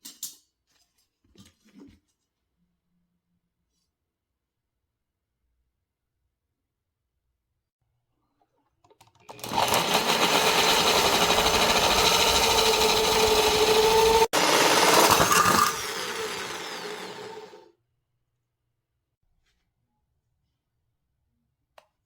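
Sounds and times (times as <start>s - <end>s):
electric power tool motor running: 9.3s - 17.6s.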